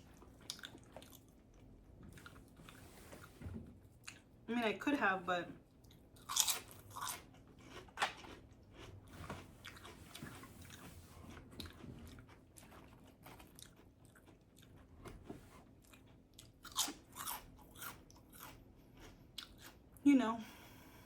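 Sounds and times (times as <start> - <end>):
soft chewing: 0.0 - 4.5, 5.6 - 20.0
crunching bites of toast: 6.2 - 10.0.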